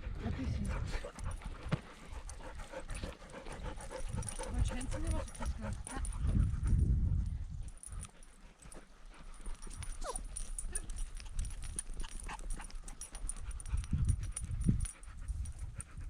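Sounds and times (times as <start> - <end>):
dog claws clicking and thumping: 9.3 - 16.0
dog whining: 9.9 - 10.9.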